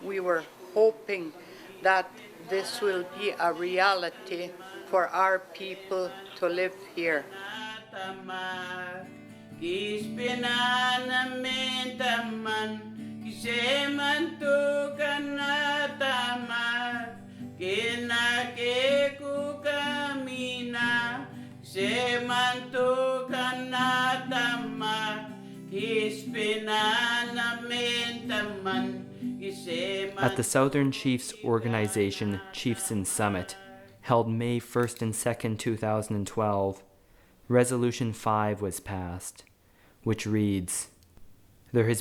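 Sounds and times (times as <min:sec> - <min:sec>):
acoustic guitar: 0:01.5 - 0:40.3
man singing: 0:04.2 - 0:36.7.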